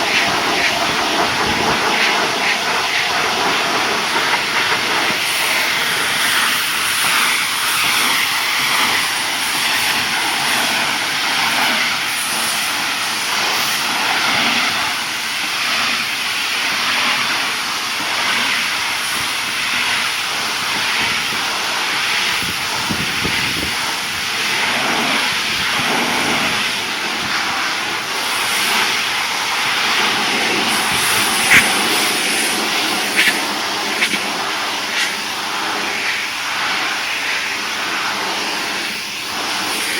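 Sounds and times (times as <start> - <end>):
pressure washer spraying water: 0.0 - 39.9.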